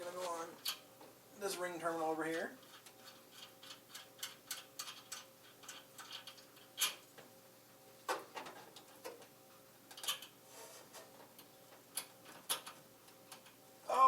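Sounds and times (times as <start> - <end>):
small metal parts clicking: 2.6 - 7.0.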